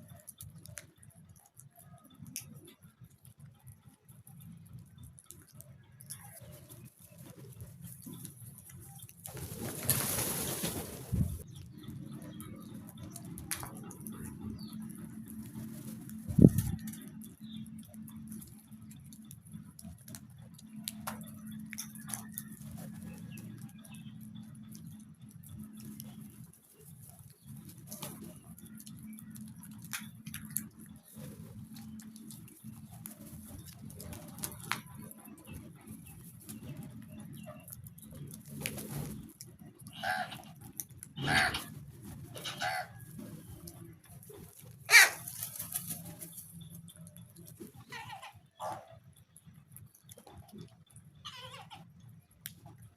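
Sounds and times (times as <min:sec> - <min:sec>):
birds moving about: 0:00.0 - 0:52.9
light ticks and pattering: 0:00.0 - 0:52.9
crow cawing: 0:44.9 - 0:45.2.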